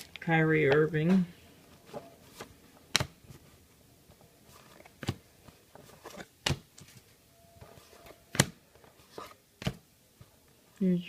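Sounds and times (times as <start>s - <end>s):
trading cards rustling: 1.6s - 10.3s
cards clicking and tapping: 1.9s - 3.4s, 4.1s - 7.0s, 7.8s - 10.3s.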